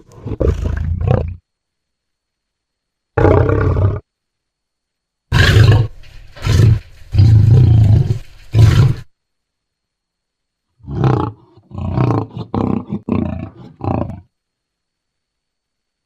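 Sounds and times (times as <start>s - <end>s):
dinosaur roars: 5.3s - 9.1s, 10.8s - 14.3s.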